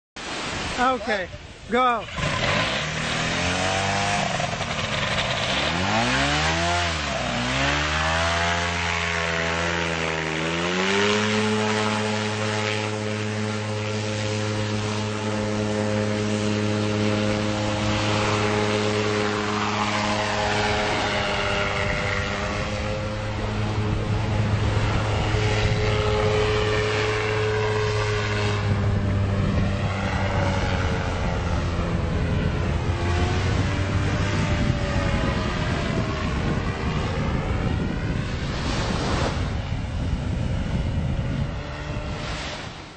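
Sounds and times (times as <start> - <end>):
engine and propeller revving: 0.2 - 42.9.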